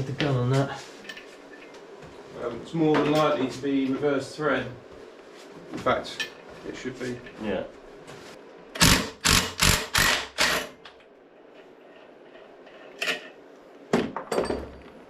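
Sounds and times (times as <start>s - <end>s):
impact wrench hammering: 8.8s - 10.8s.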